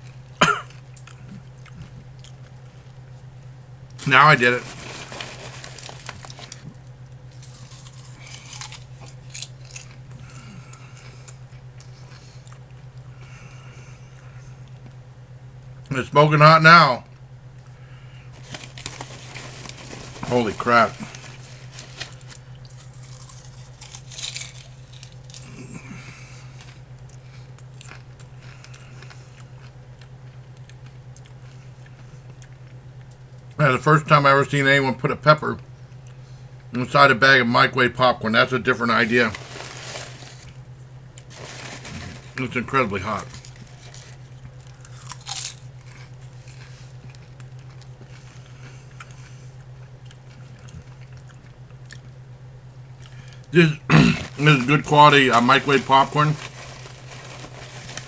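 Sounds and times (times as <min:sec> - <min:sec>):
person chewing and crunching food: 0:00.0 - 0:03.2, 0:04.0 - 0:15.0, 0:17.6 - 0:33.6, 0:38.9 - 0:52.2, 0:52.9 - 0:58.0
steady low hum: 0:00.0 - 0:58.0
crinkly rustle: 0:04.0 - 0:06.7, 0:18.3 - 0:25.4, 0:39.0 - 0:40.6, 0:41.2 - 0:47.2, 0:54.2 - 0:58.0.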